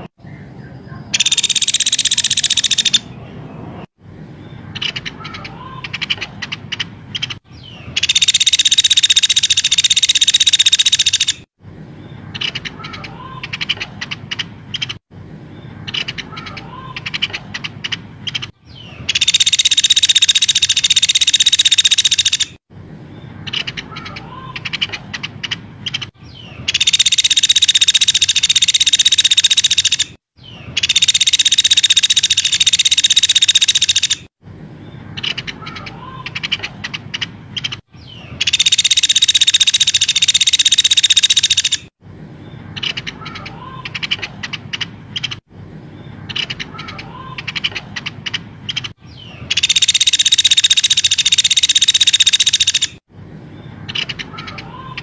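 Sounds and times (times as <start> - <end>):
high-pitched bird trills: 1.1 - 3.2, 4.7 - 11.5, 15.7 - 22.6, 23.4 - 34.3, 35.2 - 41.9, 46.3 - 53.0, 53.8 - 55.0.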